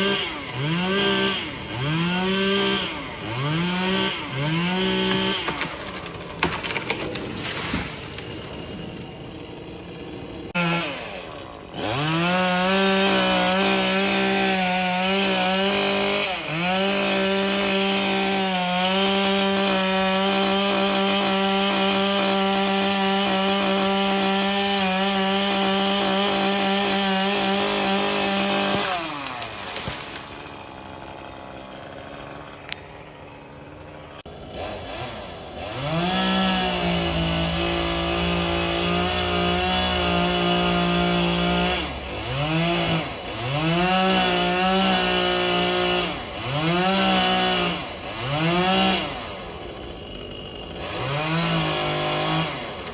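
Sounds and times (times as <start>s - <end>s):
two-stroke engine revving: 0.0s - 6.6s, 8.3s - 52.9s.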